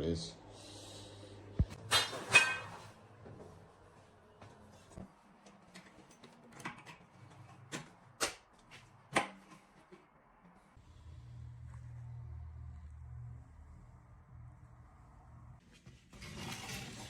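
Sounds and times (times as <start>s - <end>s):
low steady hum: 10.6s - 15.6s.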